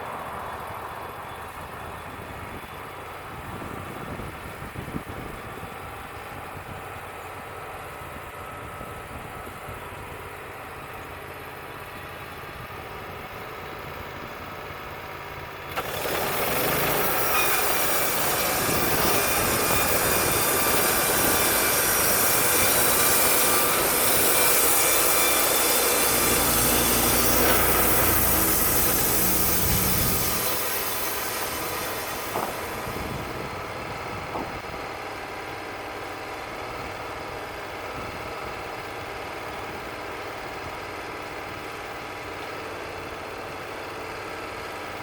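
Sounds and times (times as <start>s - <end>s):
band sawmill running: 0.0s - 45.0s
saw blade cutting into log: 15.7s - 33.4s.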